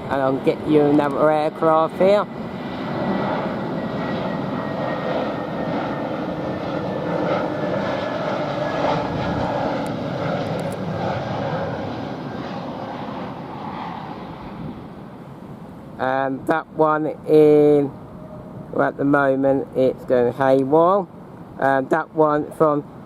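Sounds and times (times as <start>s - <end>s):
jet engines rushing and whining: 0.0s - 23.0s.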